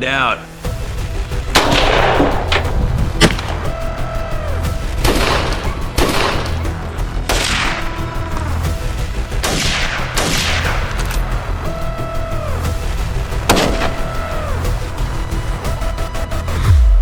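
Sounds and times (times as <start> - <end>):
dramatic soundtrack music: 0.0 - 17.0
sharp noise hits: 0.6 - 8.3.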